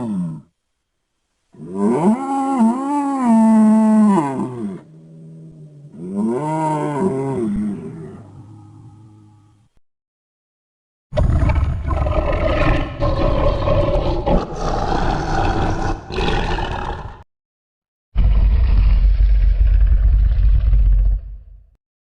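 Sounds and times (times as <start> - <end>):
person imitating creature roar: 0.0 - 0.5, 1.6 - 9.2, 11.2 - 17.3
deep low growl: 11.2 - 17.2, 18.2 - 21.8.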